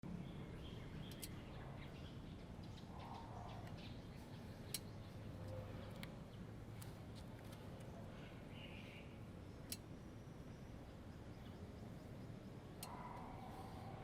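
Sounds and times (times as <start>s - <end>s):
small sharp clicks: 1.0s - 1.4s, 9.6s - 9.9s.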